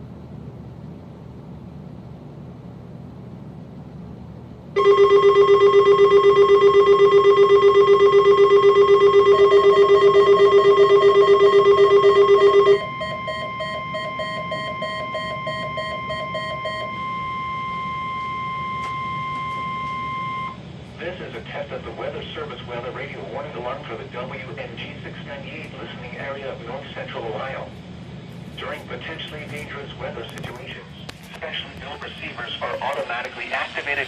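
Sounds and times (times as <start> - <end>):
fluttering radio alarm: 4.8 - 20.6
quiet beeping: 4.8 - 20.6
steady warning alarm tone: 4.8 - 20.7
faint radio static: 28.4 - 34.0.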